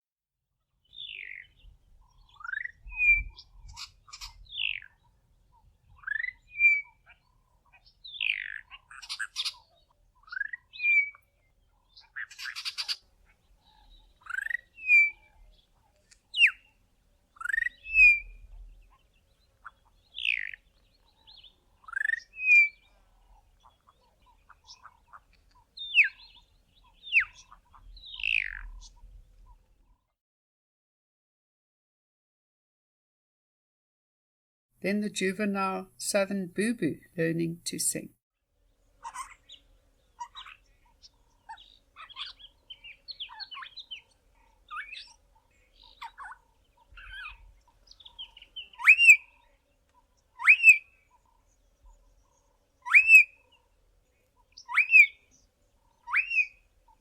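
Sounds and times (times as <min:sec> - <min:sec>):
young bird whistling song: 0:00.9 - 0:05.0, 0:05.9 - 0:07.2, 0:08.0 - 0:11.2, 0:12.0 - 0:13.0, 0:13.6 - 0:15.6, 0:16.3 - 0:16.8, 0:17.4 - 0:19.0, 0:20.2 - 0:22.9, 0:25.8 - 0:29.0, 0:41.5 - 0:44.1, 0:45.8 - 0:49.4, 0:50.4 - 0:51.0, 0:52.8 - 0:53.5, 0:54.6 - 0:55.2, 0:56.0 - 0:56.6.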